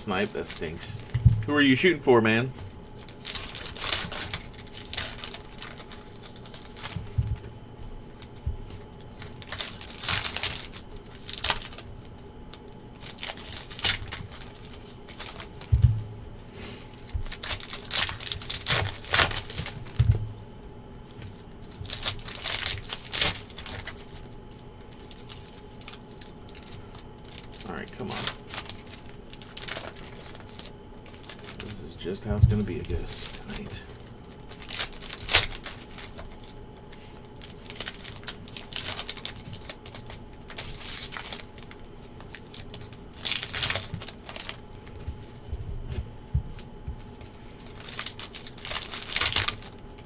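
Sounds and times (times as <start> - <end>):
foil wrappers crinkling: 0.0 - 50.0
soft low thumps: 1.0 - 1.6, 15.7 - 16.4, 32.3 - 32.9.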